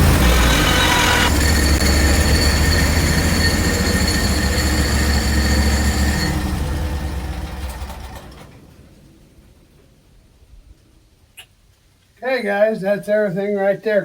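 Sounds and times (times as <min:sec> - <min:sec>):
high whine: 0:00.0 - 0:07.0
chainsaw cutting wood: 0:00.0 - 0:08.1.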